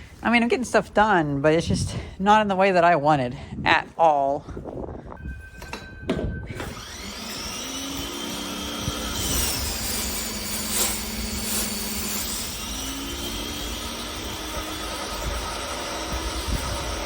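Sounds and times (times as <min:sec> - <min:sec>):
pressure washer whine: 0:06.4 - 0:17.0
pressure washer spraying water: 0:06.8 - 0:17.0.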